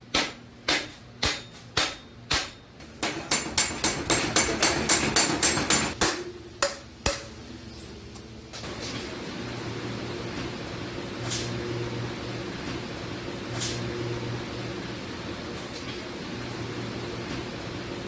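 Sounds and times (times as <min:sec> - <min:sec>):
hammer striking sheet iron: 0:00.0 - 0:07.4.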